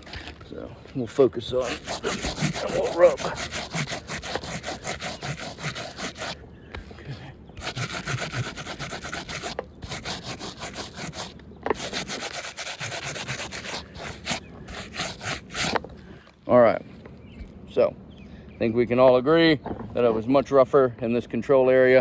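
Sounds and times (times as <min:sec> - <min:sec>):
hand scraping roof shingles: 0:00.0 - 0:16.0.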